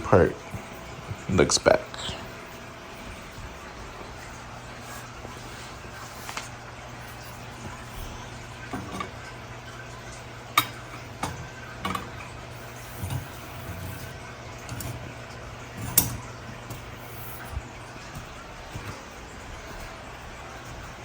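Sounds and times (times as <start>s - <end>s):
poles knocking and clicking: 10.6s - 12.3s.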